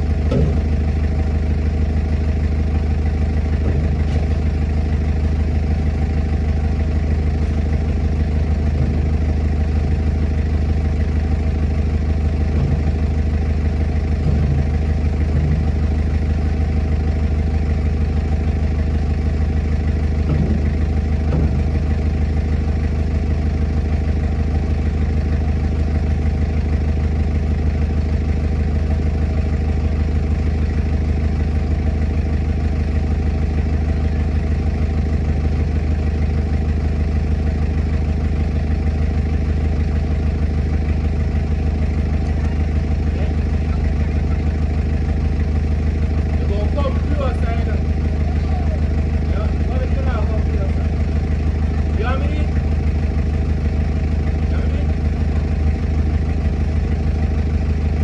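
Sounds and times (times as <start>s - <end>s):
diesel engine idling: 0.0s - 58.0s
faint clanks: 0.2s - 0.8s, 20.2s - 21.8s.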